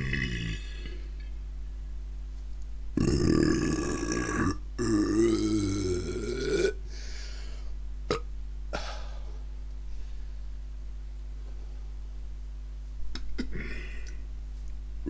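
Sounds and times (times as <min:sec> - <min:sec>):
long burps: 0:00.0 - 0:01.3, 0:03.0 - 0:06.8, 0:08.1 - 0:09.0, 0:13.4 - 0:14.2.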